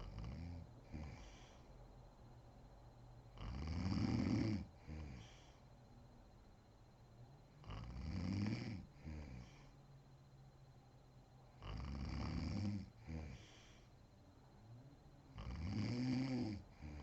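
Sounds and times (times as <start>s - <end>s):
woman snoring: 0.0s - 1.6s, 3.4s - 5.4s, 7.6s - 9.7s, 11.6s - 13.7s, 15.4s - 17.0s.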